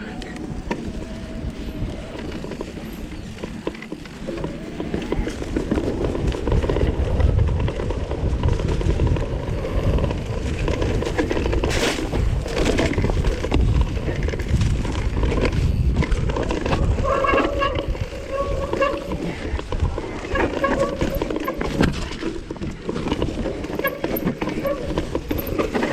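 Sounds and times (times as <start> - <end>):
bike rattles and knocks: 0.0 - 25.9
bike tyres on ground: 0.0 - 25.9
wind on microphone: 0.0 - 25.9.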